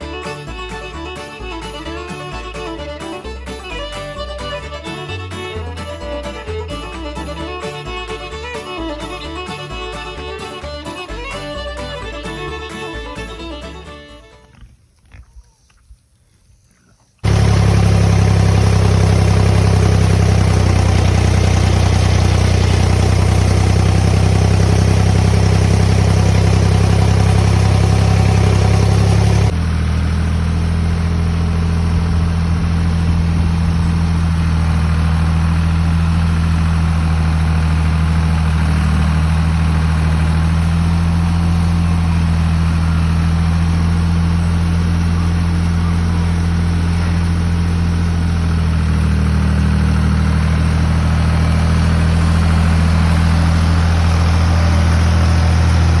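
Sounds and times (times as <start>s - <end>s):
engine idling drone: 17.2s - 56.0s.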